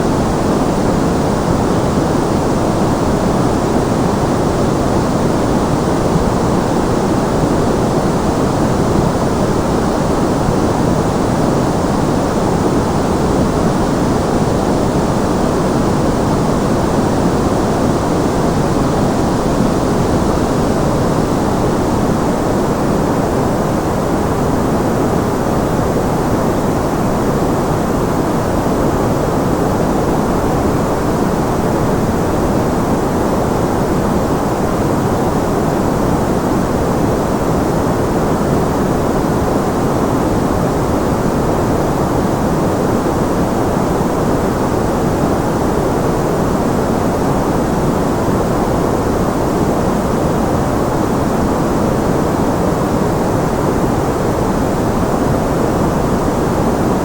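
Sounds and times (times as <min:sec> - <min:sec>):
deep white noise: 0:00.0 - 0:57.0.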